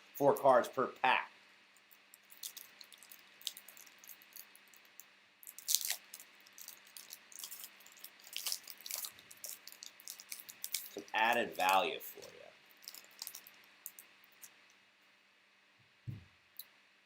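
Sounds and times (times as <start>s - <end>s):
foil wrapper crinkling and tearing: 1.9s - 14.5s.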